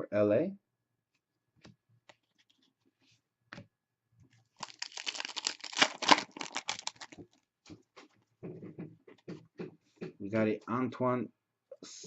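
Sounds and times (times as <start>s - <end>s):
card pack wrapper crinkling: 4.6s - 7.3s.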